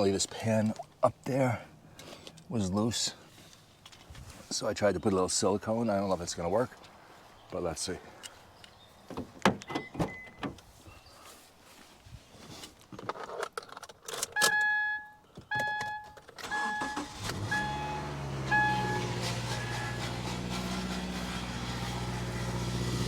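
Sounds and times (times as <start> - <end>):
car warning chime beeping: 14.4 - 20.2
car engine cranking and idling: 16.3 - 23.0.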